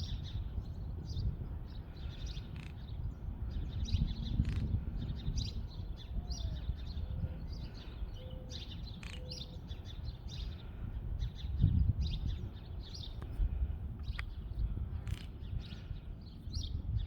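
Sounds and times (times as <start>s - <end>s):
low wind rumble: 0.0s - 17.0s
bird bill clacking: 2.4s - 2.8s, 8.9s - 9.5s, 14.0s - 15.4s.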